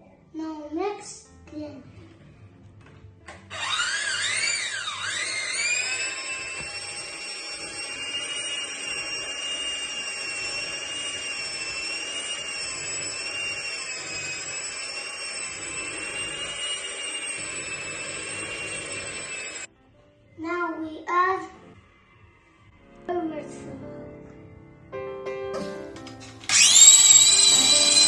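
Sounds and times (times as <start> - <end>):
electric mixer motor whining: 3.3 - 19.7, 26.4 - 28.0.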